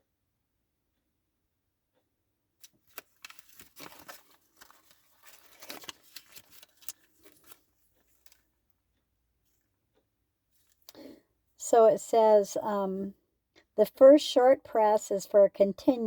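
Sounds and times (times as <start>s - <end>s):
paper rustling and crinkling: 2.6s - 8.5s.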